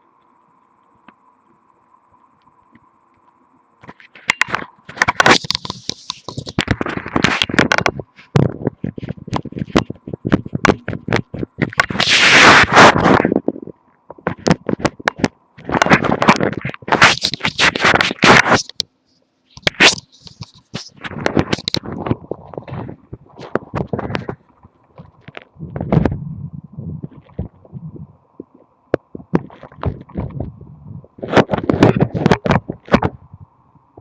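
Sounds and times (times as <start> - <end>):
sharp clicks and crackles: 0.2 - 18.9, 19.5 - 26.2, 28.4 - 33.6
microphone rubbing on skin: 3.8 - 18.8, 19.6 - 33.5.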